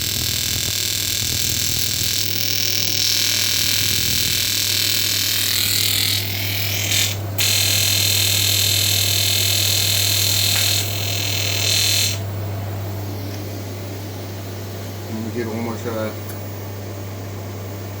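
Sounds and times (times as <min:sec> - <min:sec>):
welding arc hissing and buzzing: 0:00.0 - 0:12.4
low machine hum: 0:00.0 - 0:18.0.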